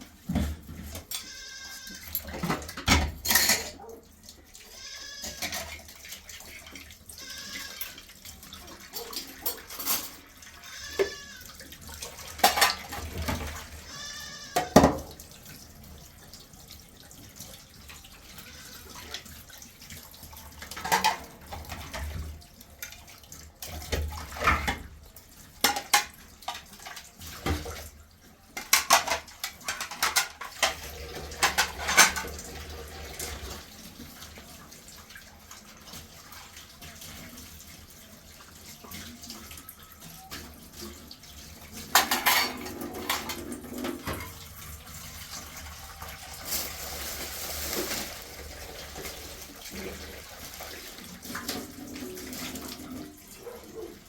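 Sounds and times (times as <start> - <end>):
goats bleating: 4.6 - 5.4, 10.6 - 11.5.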